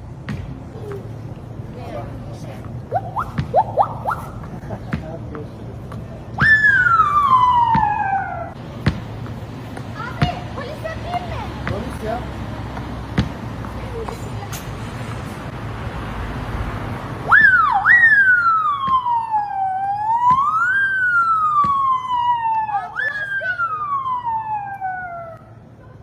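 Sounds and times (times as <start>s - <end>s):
siren-like wail: 6.4s - 8.6s, 17.3s - 25.5s.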